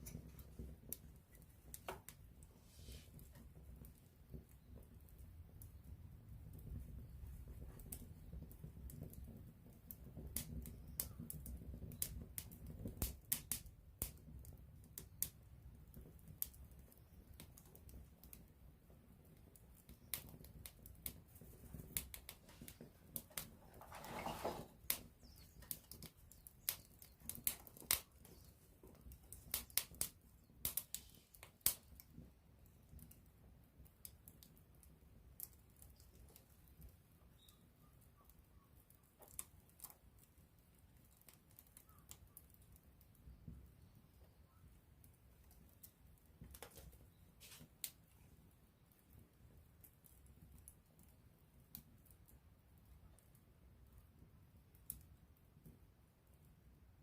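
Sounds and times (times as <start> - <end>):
low flame rumble: 0.0 - 37.2
wood fire crackling: 0.0 - 57.0.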